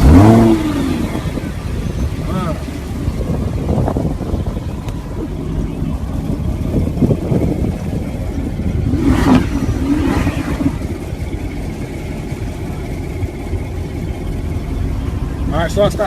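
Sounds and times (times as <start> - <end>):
car engine revving: 0.0 - 16.0
low rumble: 0.0 - 16.0
loud exhaust burst: 8.8 - 11.4.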